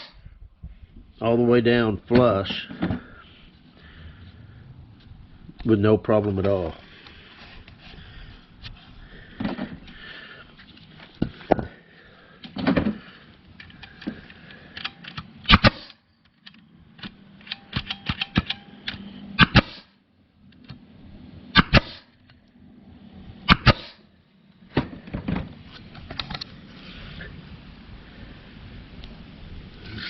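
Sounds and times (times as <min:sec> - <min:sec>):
pneumatic stapler shots: 0:14.8 - 0:16.0, 0:17.0 - 0:19.9, 0:21.5 - 0:22.1, 0:23.5 - 0:24.0.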